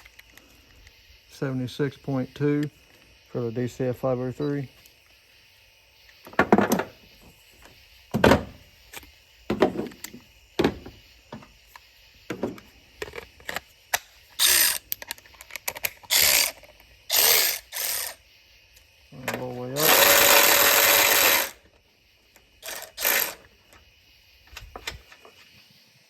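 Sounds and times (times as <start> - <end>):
ratchet motor running: 14.4 - 15.0, 15.8 - 18.2, 19.8 - 21.6, 22.6 - 23.5.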